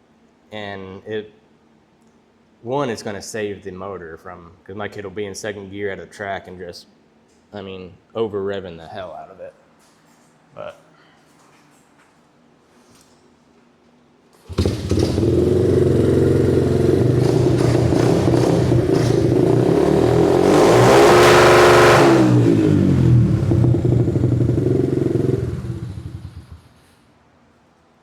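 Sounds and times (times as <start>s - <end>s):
dirt bike engine idling and revving: 14.5s - 26.8s.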